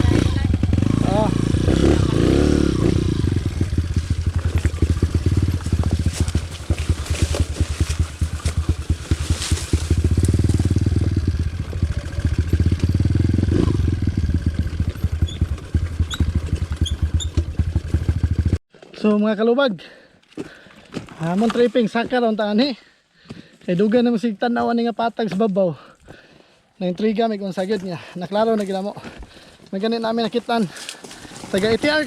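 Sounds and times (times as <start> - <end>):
dirt bike engine: 0.0 - 18.6, 30.2 - 32.0.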